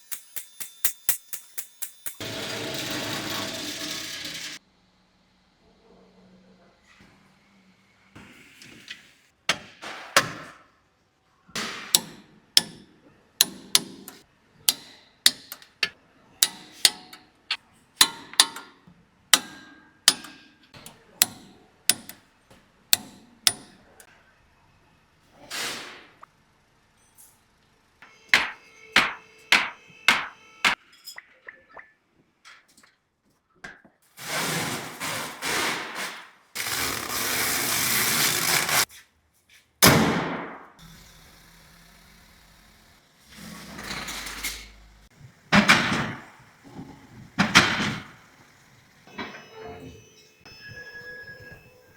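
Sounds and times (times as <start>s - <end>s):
hammer blows on metal: 28.0s - 30.8s.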